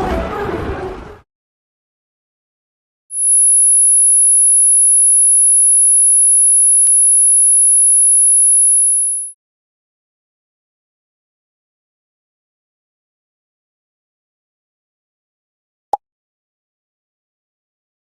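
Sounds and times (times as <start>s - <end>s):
high-pitched electronic tone: 3.1s - 9.3s.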